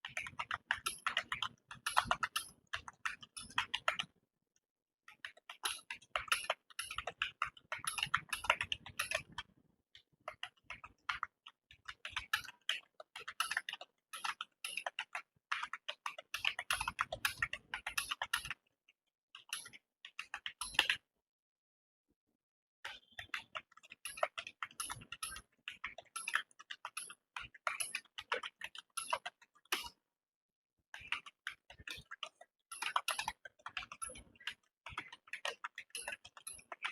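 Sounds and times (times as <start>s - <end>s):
fast keyboard typing: 0.0s - 4.1s, 5.3s - 9.5s, 31.0s - 36.9s.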